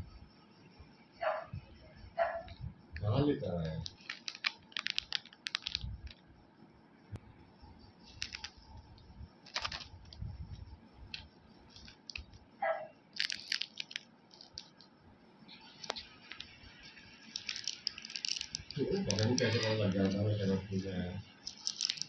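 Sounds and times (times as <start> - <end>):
plastic packaging crinkling: 3.6 - 6.2, 8.0 - 8.8, 9.4 - 10.2, 11.1 - 12.4, 13.1 - 14.9, 15.7 - 20.8, 21.4 - 22.0.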